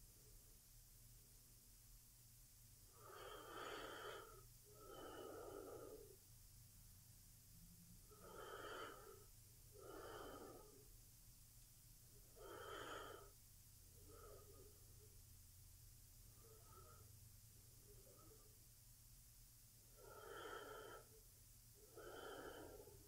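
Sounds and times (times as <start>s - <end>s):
woman breathing in sleep: 2.9s - 6.2s, 8.0s - 10.9s, 12.2s - 15.1s, 16.3s - 17.2s, 19.9s - 23.0s.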